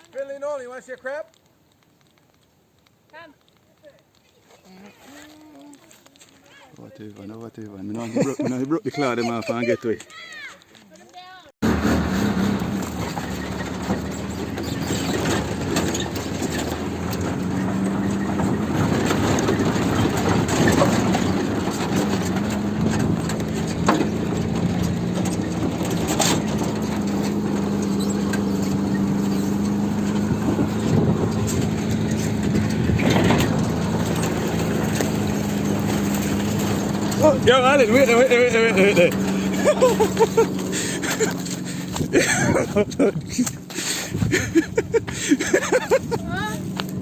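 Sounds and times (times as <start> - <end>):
vehicle engine humming: 11.6 - 47.0.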